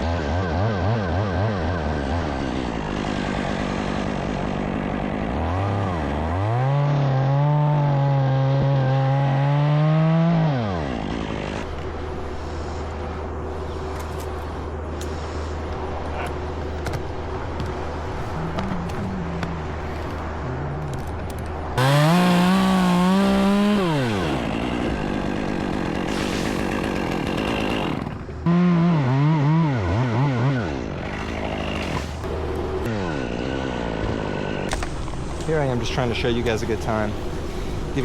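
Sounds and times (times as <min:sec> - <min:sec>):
low engine hum: 0:00.0 - 0:26.1
chainsaw revving: 0:00.2 - 0:11.7, 0:21.8 - 0:34.4.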